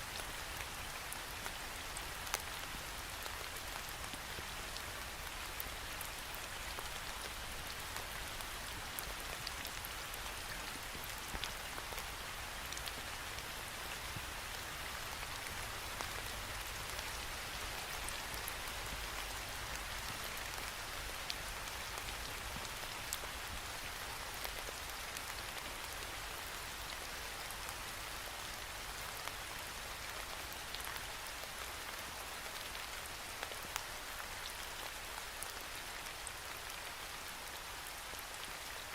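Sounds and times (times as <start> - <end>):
rain on a window: 0.0 - 38.9.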